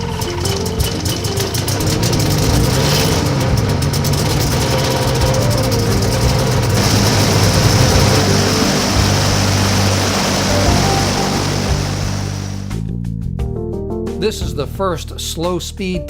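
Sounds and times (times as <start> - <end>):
steady hiss: 0.0 - 12.8
two-stroke engine idling: 0.0 - 12.8.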